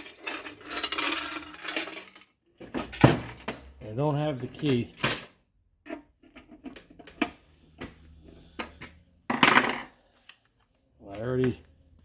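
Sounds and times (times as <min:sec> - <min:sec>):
coins shifting in coin box: 0:00.0 - 0:03.5.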